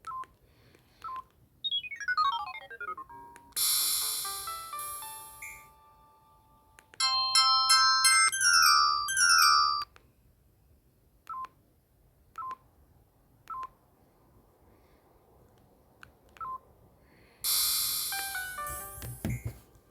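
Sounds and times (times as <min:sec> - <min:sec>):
phone electronic melody: 0:01.7 - 0:09.8, 0:18.1 - 0:19.6
bright phone tone: 0:07.0 - 0:09.9, 0:18.1 - 0:19.6.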